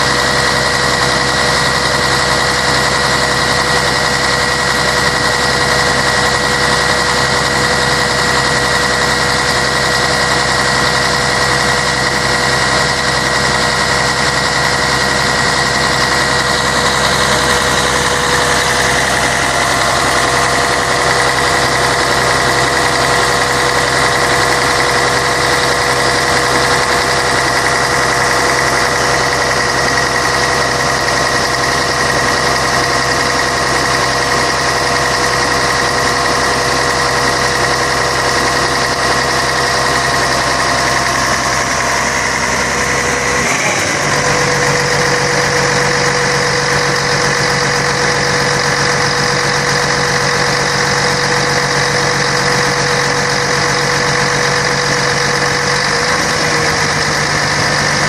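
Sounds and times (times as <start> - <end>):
bus diesel engine running: 0.0 - 58.0
constant whine: 0.0 - 58.0.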